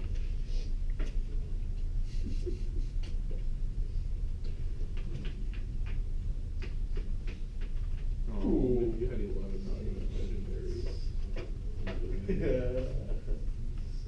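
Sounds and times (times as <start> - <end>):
steady low hum: 0.0 - 14.0
faint clicks and taps: 4.4 - 9.2, 9.8 - 13.9.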